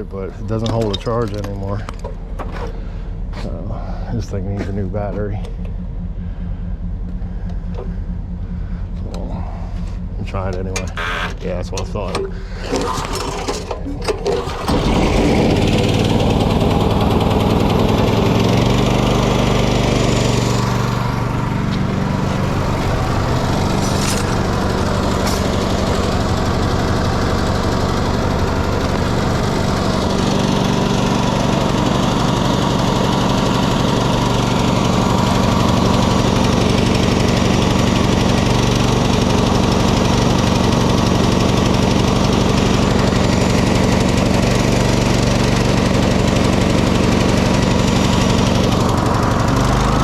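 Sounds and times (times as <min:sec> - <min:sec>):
small gasoline engine running: 0:12.3 - 0:50.0.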